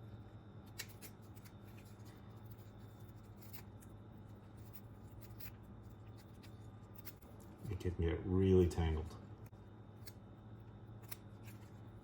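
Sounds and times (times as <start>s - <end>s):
steady low hum: 0.0s - 12.0s
scissors snipping hair: 11.0s - 11.6s.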